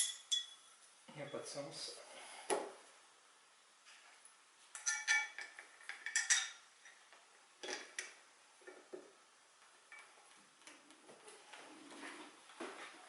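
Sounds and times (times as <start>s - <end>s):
metal hardware clinking: 4.8s - 7.0s.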